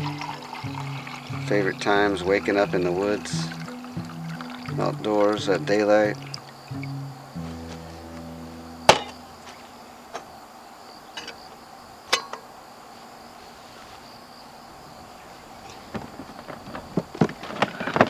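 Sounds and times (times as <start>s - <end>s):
insects chirring: 0.0s - 18.0s.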